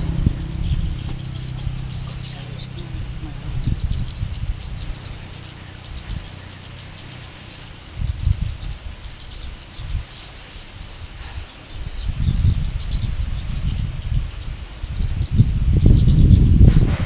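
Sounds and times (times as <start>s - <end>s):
uneven diesel engine running: 0.0s - 9.4s
birds chirping: 0.0s - 17.0s.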